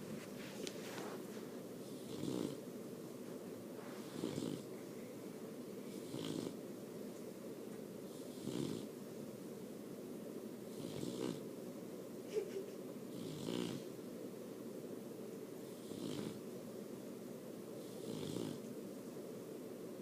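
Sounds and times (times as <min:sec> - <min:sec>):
puppy snoring: 0:01.8 - 0:02.7, 0:03.9 - 0:04.8, 0:05.9 - 0:06.6, 0:08.0 - 0:09.0, 0:10.7 - 0:11.5, 0:13.1 - 0:14.0, 0:15.6 - 0:16.4, 0:17.8 - 0:18.7.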